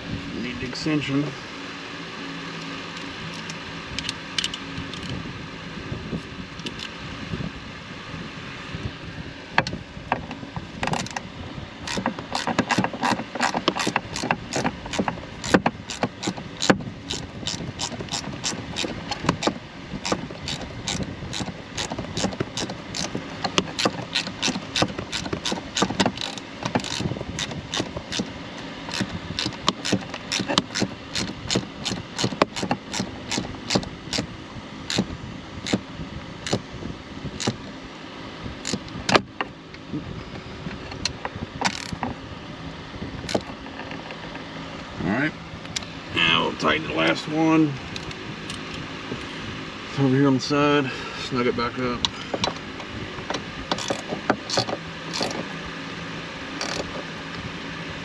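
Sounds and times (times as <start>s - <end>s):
hand ratchet clicking: 11.8s - 28.3s, 28.9s - 34.3s, 34.9s - 35.8s, 37.4s - 37.6s, 41.6s - 42.0s, 53.7s - 55.4s, 56.6s - 57.0s.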